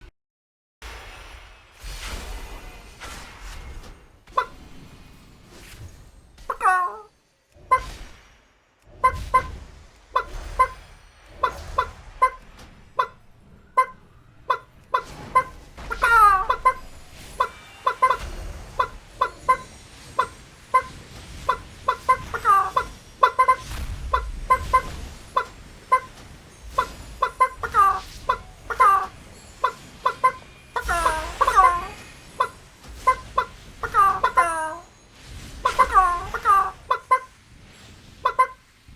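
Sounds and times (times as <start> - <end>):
chicken clucking: 4.4 - 4.6, 6.5 - 7.1, 9.0 - 9.5, 10.2 - 10.8, 11.4 - 12.4, 13.8 - 26.2, 26.8 - 34.8, 35.6 - 37.3, 38.2 - 38.6.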